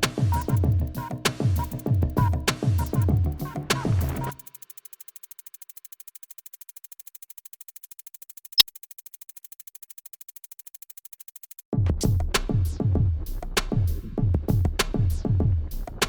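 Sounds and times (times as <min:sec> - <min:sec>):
electronic music with drum-machine beat: 0:00.0 - 0:05.2, 0:11.8 - 0:16.0
fast high ticking: 0:04.2 - 0:11.6.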